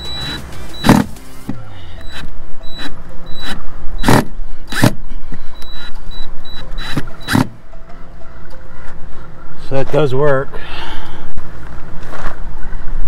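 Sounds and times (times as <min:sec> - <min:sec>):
drill motor whir: 0:02.0 - 0:05.0, 0:05.6 - 0:07.5.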